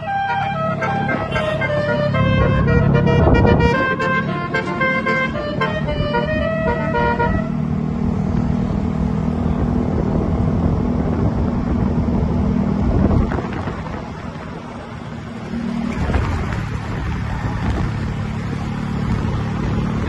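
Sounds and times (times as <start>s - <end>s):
musical air horn tune: 0.0s - 7.6s
bus engine running: 0.0s - 20.0s.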